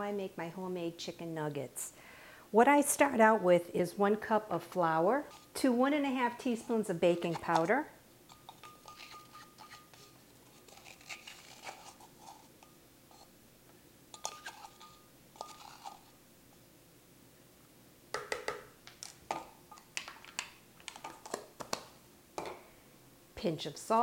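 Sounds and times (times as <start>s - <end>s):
measuring spoons clinking on bowl: 8.3s - 9.9s, 14.2s - 16.0s.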